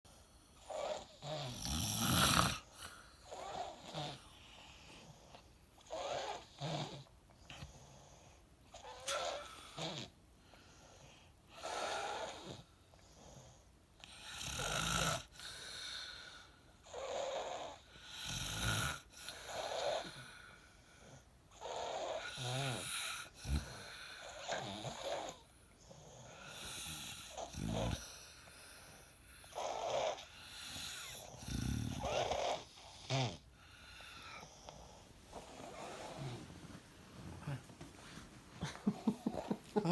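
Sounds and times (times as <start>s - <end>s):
man snoring: 0.7s - 2.7s, 26.6s - 28.1s, 29.6s - 33.4s, 38.6s - 39.9s.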